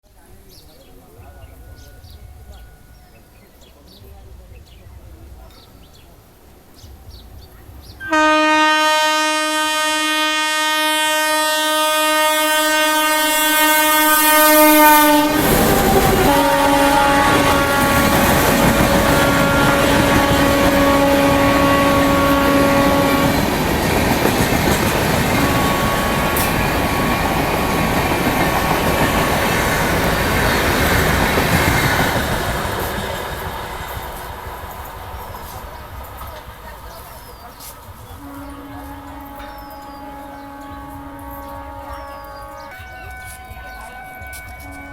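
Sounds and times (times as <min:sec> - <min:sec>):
passing train coaches clattering: 0:00.0 - 0:44.9
locomotive air horn blast: 0:08.0 - 0:24.1, 0:25.1 - 0:27.3, 0:38.2 - 0:44.9.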